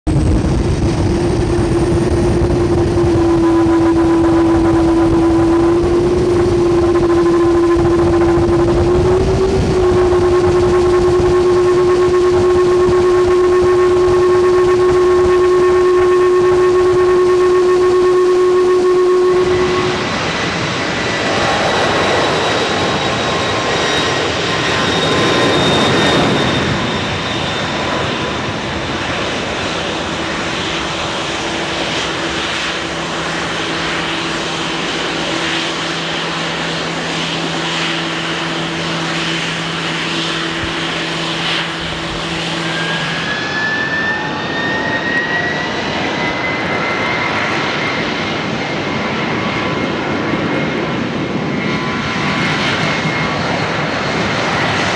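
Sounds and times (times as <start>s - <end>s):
high engine whine: 0.0s - 54.9s
jet engines roaring: 0.1s - 54.9s
low steady tones: 0.2s - 27.4s.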